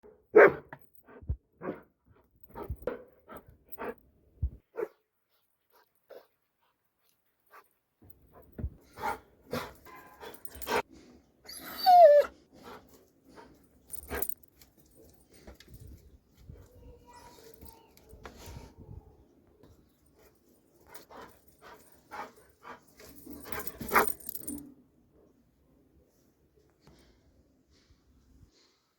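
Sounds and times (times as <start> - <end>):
dog barking: 0.3 - 0.7
dog whining: 11.5 - 12.4.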